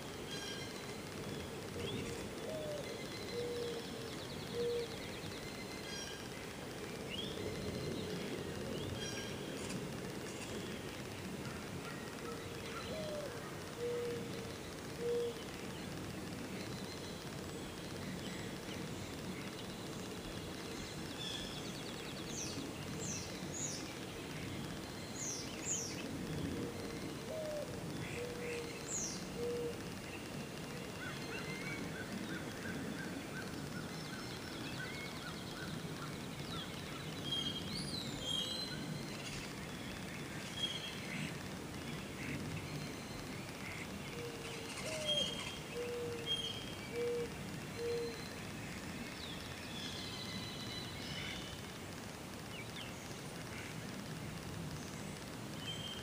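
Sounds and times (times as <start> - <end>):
outdoor background hiss: 0.0 - 56.0
wild birds whistling and chirping: 0.0 - 56.0.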